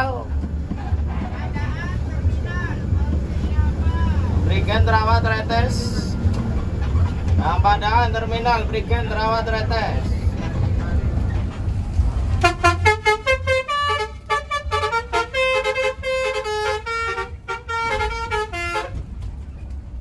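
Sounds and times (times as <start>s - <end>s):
bus engine rumble: 0.0s - 20.0s
bus horn playing tune: 12.4s - 19.0s.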